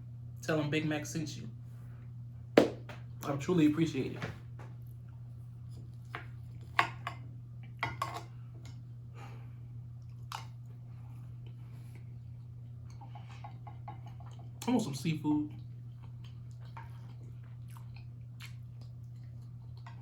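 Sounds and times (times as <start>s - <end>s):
steady low hum: 0.0s - 20.0s
close chewing: 15.6s - 20.0s.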